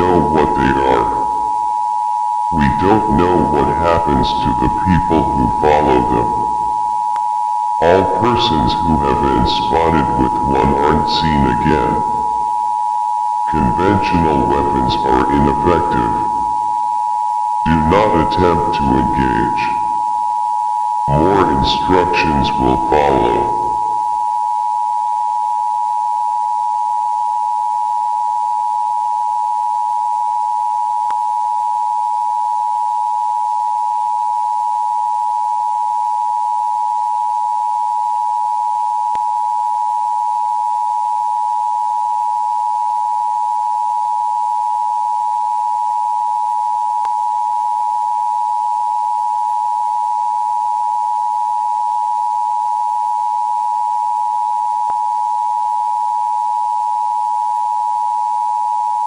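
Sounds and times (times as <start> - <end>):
steady electronic tone: 0.0 - 1.7, 2.5 - 7.0, 7.8 - 12.6, 13.5 - 16.8, 21.1 - 24.2.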